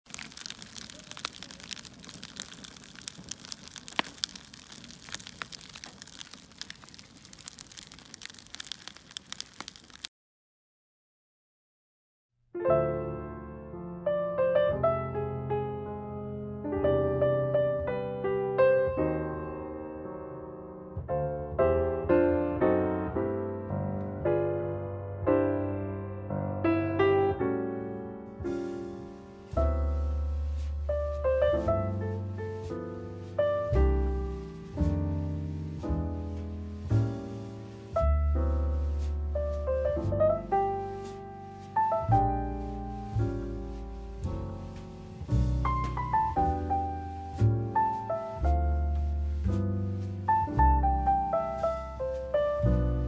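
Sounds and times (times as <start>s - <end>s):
wood fire crackling: 0.0s - 10.1s, 28.4s - 53.0s
slow piano music: 12.6s - 53.0s.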